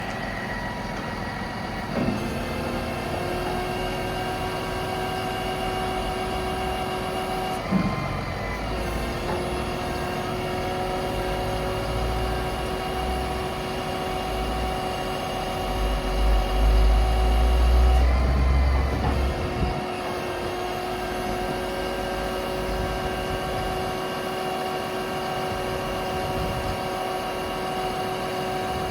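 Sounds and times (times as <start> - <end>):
diesel truck engine running: 15.6 - 20.5.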